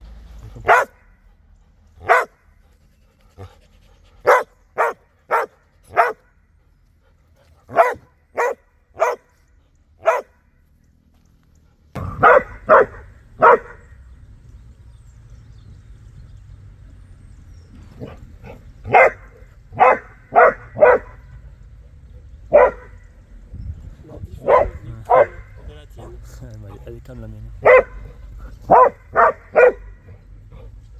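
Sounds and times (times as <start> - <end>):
dog barking: 0.4 - 1.0, 2.0 - 2.4, 4.2 - 6.2, 7.7 - 9.3, 10.0 - 10.4, 12.0 - 14.0, 18.0 - 21.4, 22.5 - 23.1, 24.1 - 26.8, 27.6 - 30.7.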